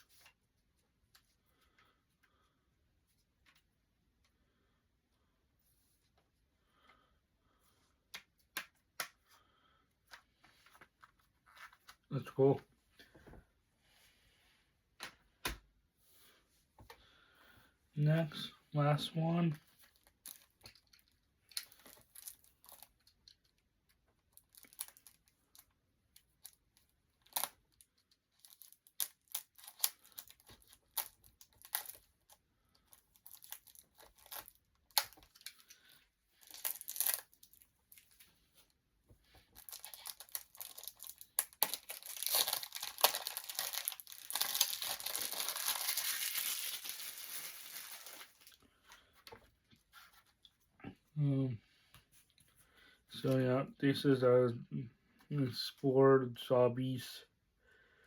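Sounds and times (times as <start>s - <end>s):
packaging crinkling and clicking: 39.6s - 48.6s
packaging tearing: 39.6s - 48.6s.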